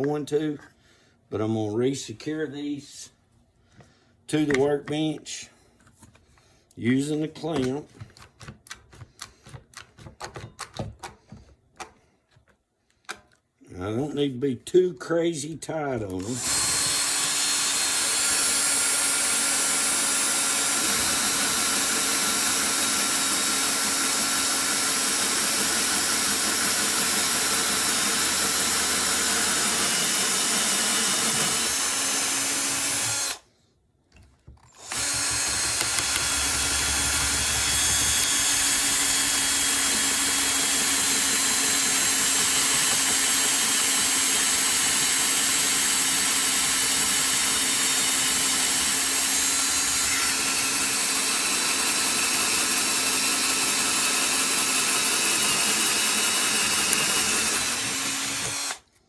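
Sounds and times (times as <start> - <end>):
power drill cutting plastic: 16.1 - 33.5, 34.6 - 59.0.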